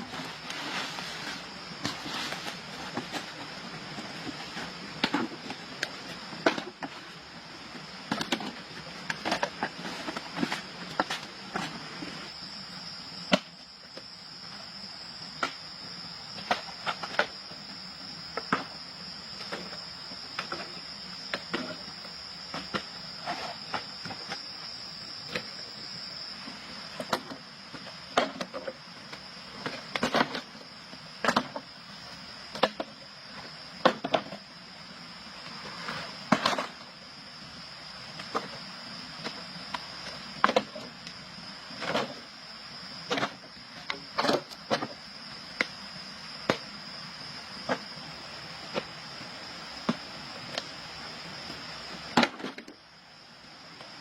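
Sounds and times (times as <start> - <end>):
insects droning: 0.0 - 54.0.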